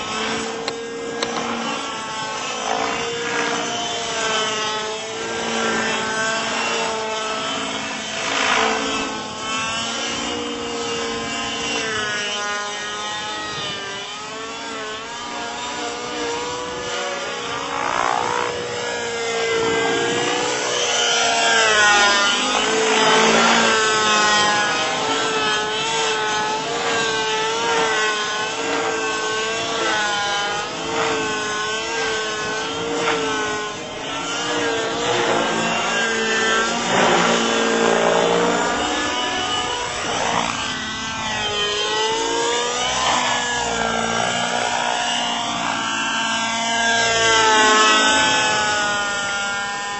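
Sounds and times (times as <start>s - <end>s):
model helicopter engine and rotors: 0.0s - 49.9s.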